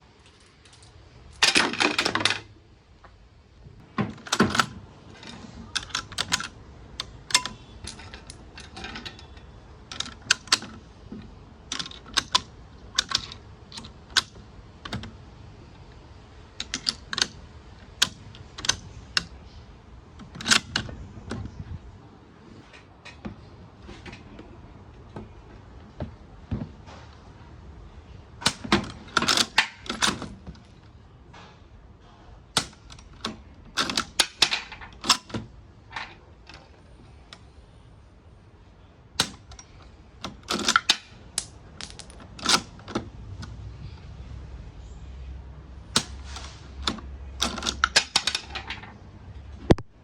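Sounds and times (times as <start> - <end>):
rifle rattling clatter: 40.5 - 42.8.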